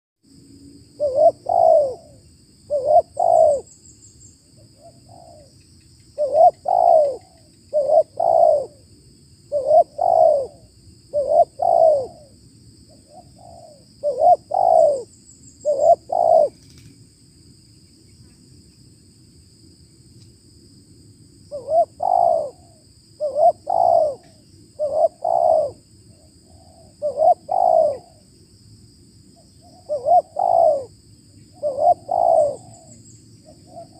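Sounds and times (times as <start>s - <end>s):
dove cooing: 1.0s - 3.7s, 4.6s - 5.5s, 6.2s - 8.8s, 9.5s - 16.8s, 21.5s - 28.2s, 29.6s - 30.9s, 31.5s - 33.9s.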